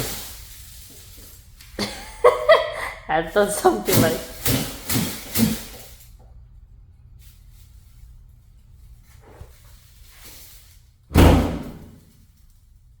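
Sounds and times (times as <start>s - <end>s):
low steady hum: 0.0s - 13.0s
car door slamming: 11.1s - 12.0s.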